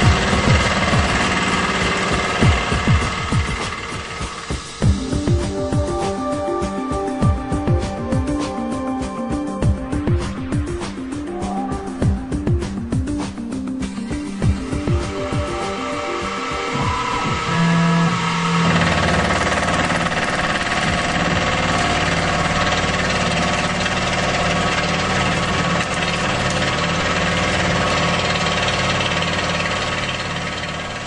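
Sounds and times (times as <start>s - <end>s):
mill cutting aluminum: 0.0s - 4.9s, 13.9s - 31.0s
low pulsing hum: 0.0s - 5.9s, 14.1s - 31.0s.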